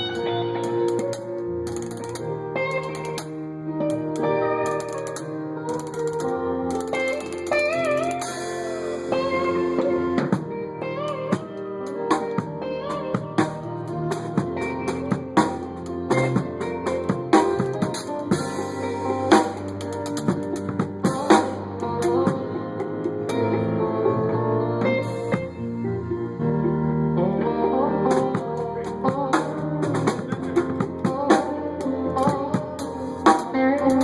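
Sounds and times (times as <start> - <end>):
electric guitar lead notes: 0.0 - 34.0
drum kit hits: 4.7 - 23.6, 28.1 - 34.0.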